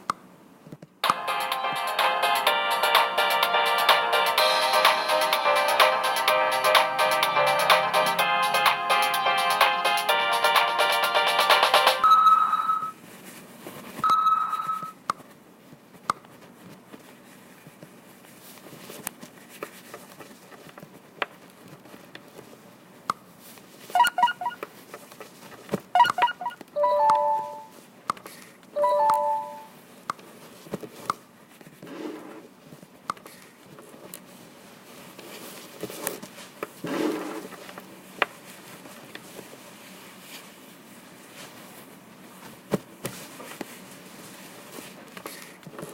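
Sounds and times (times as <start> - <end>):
music: 1.0 - 12.0, 28.8 - 29.7
short beeping tones: 12.0 - 13.0, 14.0 - 15.0, 24.0 - 24.6, 26.0 - 27.7, 28.8 - 29.7
pitched tone clusters: 24.0 - 24.6, 26.0 - 27.7, 28.8 - 29.7.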